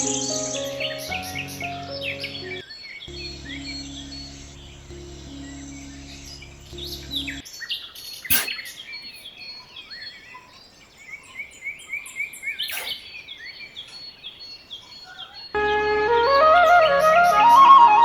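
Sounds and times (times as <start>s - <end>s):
small birds chirping: 0.0s - 15.6s
low steady hum: 3.1s - 7.4s.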